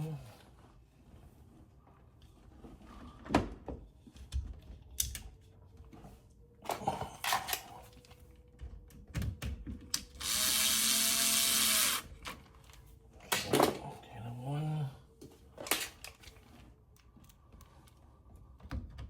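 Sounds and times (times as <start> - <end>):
electric screwdriver running: 10.2 - 12.1.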